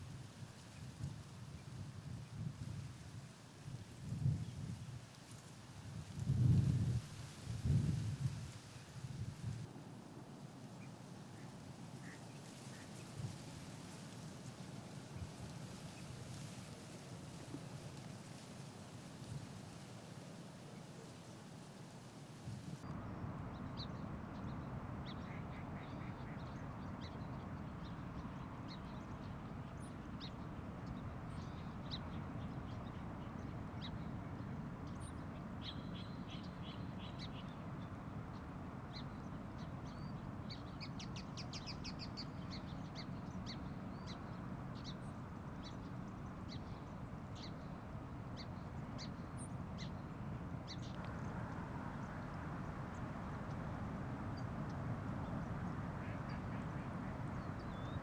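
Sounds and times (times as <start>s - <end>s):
rails calling: 16.5s - 22.7s, 51.0s - 58.0s.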